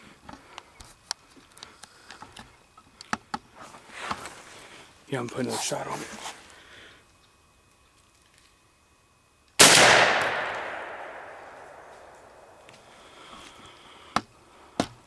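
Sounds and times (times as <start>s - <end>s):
shotgun shot echoing: 9.6s - 12.7s.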